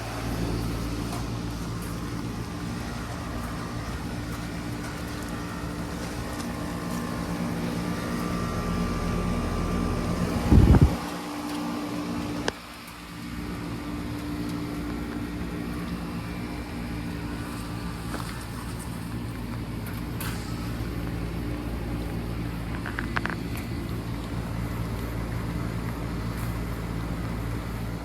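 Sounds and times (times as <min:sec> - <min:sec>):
heat pump hum: 0:00.0 - 0:28.0.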